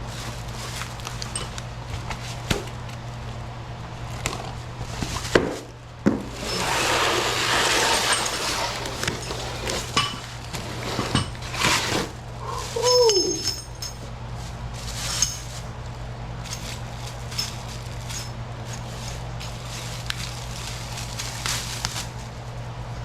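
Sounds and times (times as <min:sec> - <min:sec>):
rustling or scraping: 0:06.1 - 0:22.6
metal parts knocking and clinking: 0:13.1 - 0:14.0.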